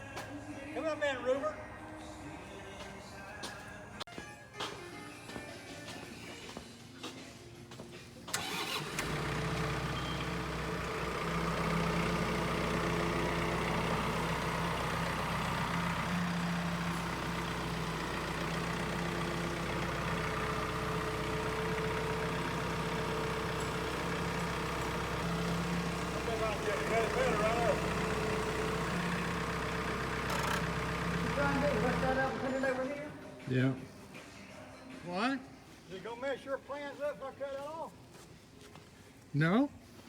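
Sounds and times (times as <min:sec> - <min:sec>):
sawmill engine running: 0:08.3 - 0:33.3.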